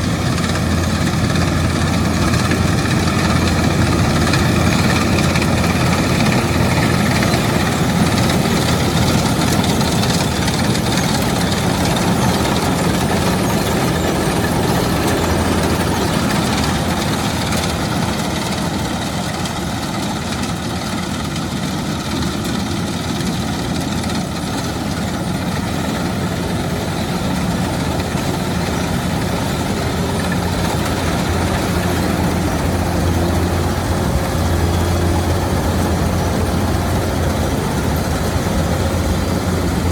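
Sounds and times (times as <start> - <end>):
combine harvester engine drone: 0.0 - 39.9.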